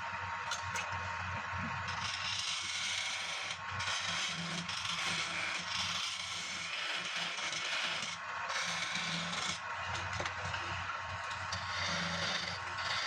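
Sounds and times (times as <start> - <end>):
lathe tool scraping wood: 1.9 - 9.6, 11.5 - 13.0.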